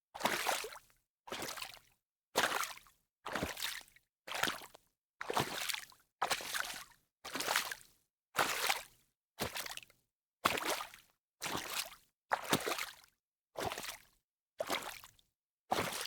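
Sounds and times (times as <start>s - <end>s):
footsteps wading through water: 1.4s - 1.7s, 3.4s - 3.8s, 5.3s - 6.7s, 13.6s - 14.0s, 14.7s - 15.1s.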